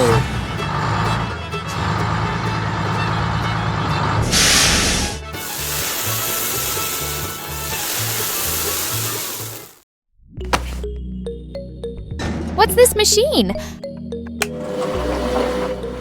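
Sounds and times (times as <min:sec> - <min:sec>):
background music: 0:00.0 - 0:09.8, 0:10.4 - 0:16.0
loud hissing whoosh: 0:04.3 - 0:07.2.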